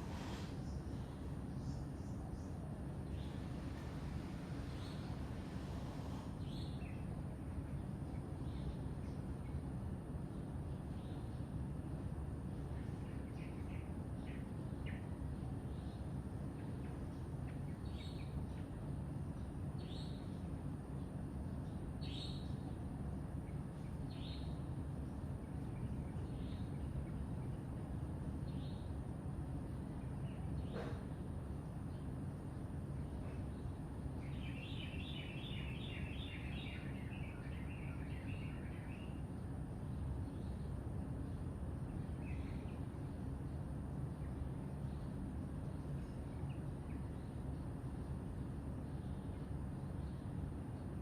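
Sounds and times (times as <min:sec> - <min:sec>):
birds chirping: 0:00.0 - 0:09.4
low background rumble: 0:00.0 - 0:51.0
songbird chirping: 0:00.0 - 0:51.0.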